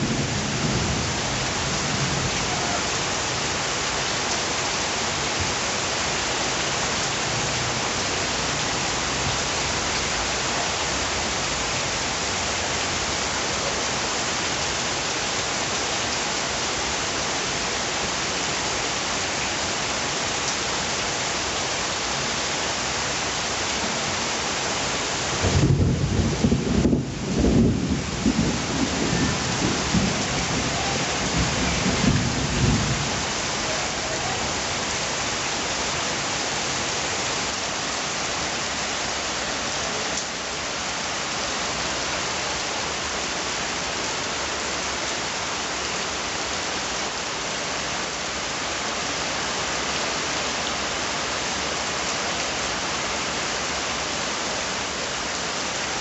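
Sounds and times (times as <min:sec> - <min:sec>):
steady rain: 0:00.0 - 0:56.0
thunder rumble: 0:25.4 - 0:33.2.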